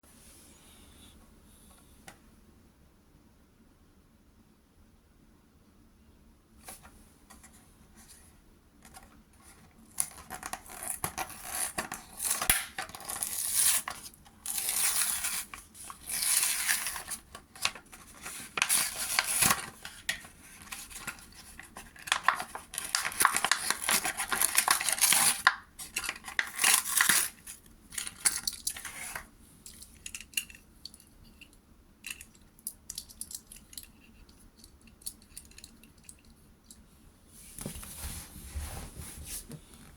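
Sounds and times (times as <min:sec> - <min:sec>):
packaging rustling and tearing: 0:09.9 - 0:29.3.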